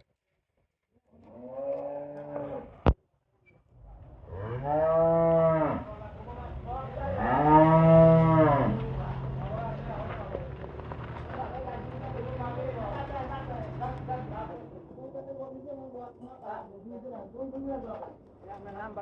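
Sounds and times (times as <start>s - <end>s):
cow mooing: 1.2s - 2.8s, 4.2s - 6.1s, 6.8s - 9.3s.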